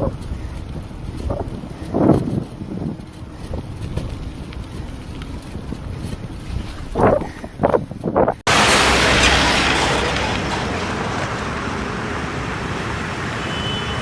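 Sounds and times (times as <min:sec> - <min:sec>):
wind gusts on microphone: 0:00.0 - 0:14.0
street traffic hiss: 0:08.5 - 0:14.0.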